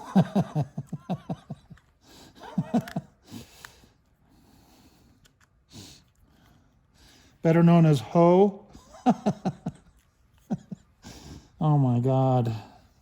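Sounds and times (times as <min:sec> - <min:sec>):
man chuckling: 0:00.0 - 0:01.8, 0:02.4 - 0:03.3
quiet breathing: 0:03.2 - 0:08.0, 0:11.0 - 0:11.6.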